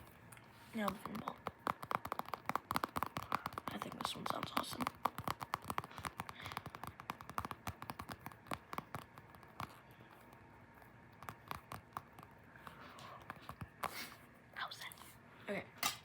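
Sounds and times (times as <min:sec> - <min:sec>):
fingers tapping on a toy: 0:00.8 - 0:09.7, 0:11.1 - 0:12.3.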